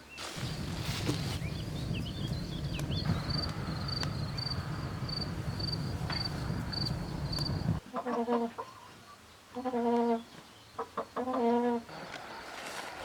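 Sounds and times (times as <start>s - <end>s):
low rumble: 0.4s - 7.8s
bird chirps: 1.4s - 4.8s.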